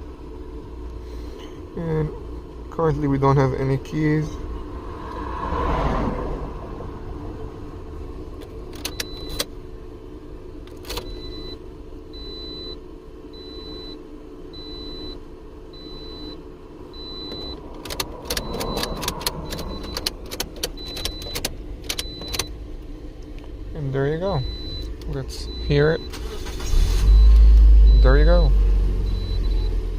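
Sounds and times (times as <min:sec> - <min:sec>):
steady low hum: 0:00.0 - 0:29.9
keys clicking and rattling: 0:17.8 - 0:22.4
short high electronic beeps: 0:18.4 - 0:20.0.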